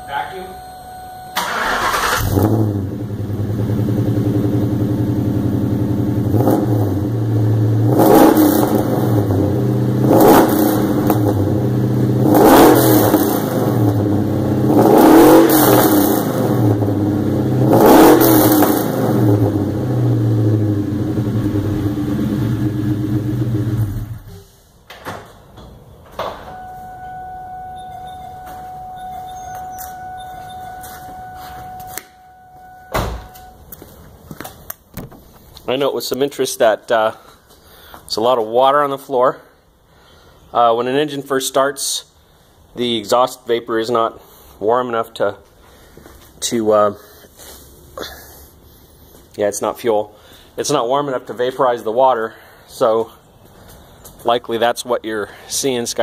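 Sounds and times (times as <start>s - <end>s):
car engine idling and revving: 0.9s - 24.4s.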